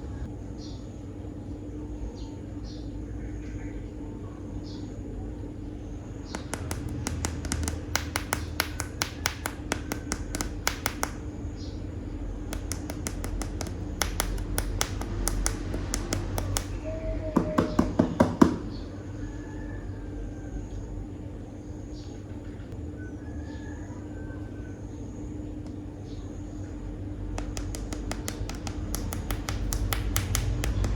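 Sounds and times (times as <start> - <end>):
plastic toys clicking: 6.4 - 11.2, 12.6 - 16.8, 27.4 - 30.9.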